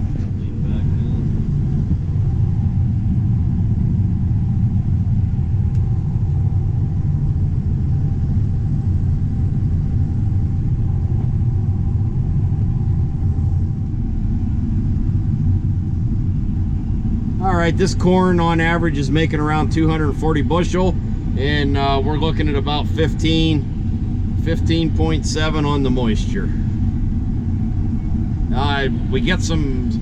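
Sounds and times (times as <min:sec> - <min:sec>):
combine harvester rumble: 0:00.0 - 0:30.0
faint steady whine: 0:00.0 - 0:30.0.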